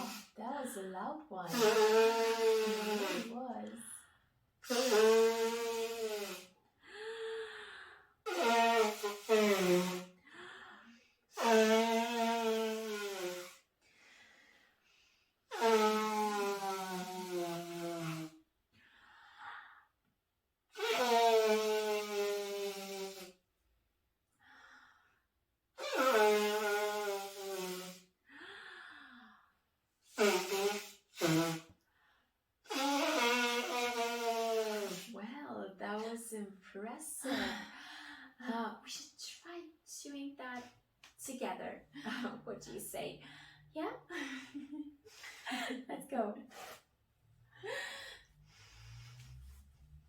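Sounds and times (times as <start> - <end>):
faint breaths: 6.8 - 8.2, 37.2 - 38.4, 43.2 - 45.7, 47.5 - 50.0.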